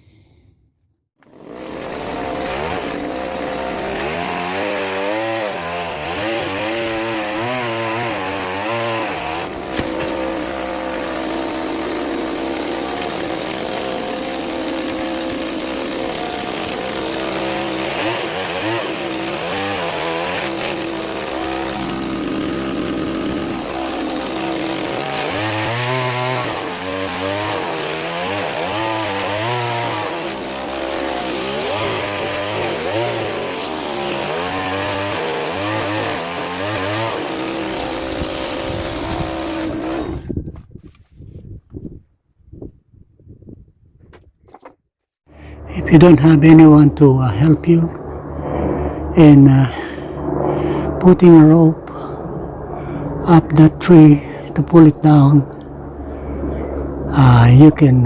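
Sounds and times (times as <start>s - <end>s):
pole saw cutting: 1.2s - 40.4s.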